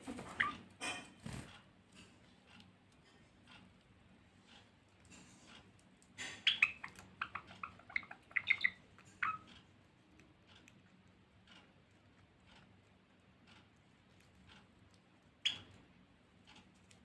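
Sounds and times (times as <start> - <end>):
finches chirping: 0.2 - 0.7, 6.2 - 9.5, 15.4 - 15.8.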